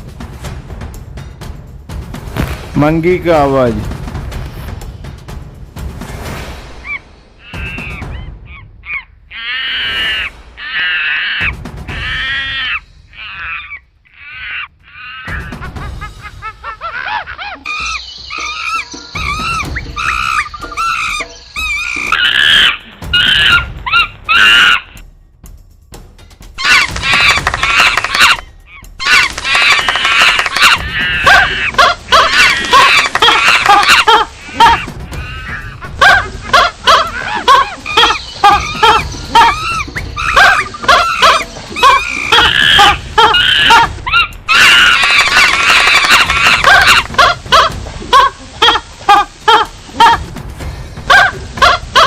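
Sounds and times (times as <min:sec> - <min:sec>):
animal squawks and squeals: 0:06.8 - 0:15.6, 0:17.0 - 0:25.0, 0:26.6 - 0:50.2
monkey shrill cries: 0:06.8 - 0:15.8, 0:16.7 - 0:25.0, 0:26.6 - 0:50.2.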